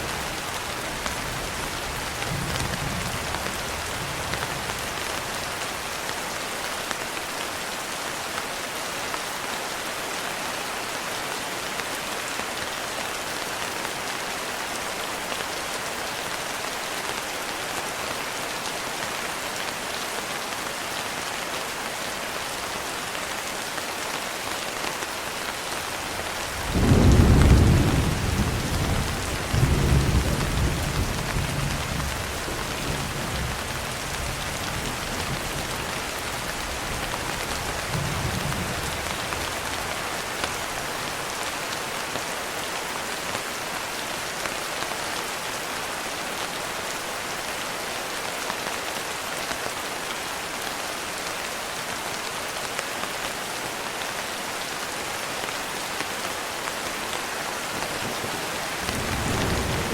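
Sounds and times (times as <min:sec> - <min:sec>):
heavy rain hissing: 0:25.4 - 0:41.9, 0:56.9 - 0:59.9
thunder rumbling: 0:26.6 - 0:32.2, 0:58.0 - 0:59.9.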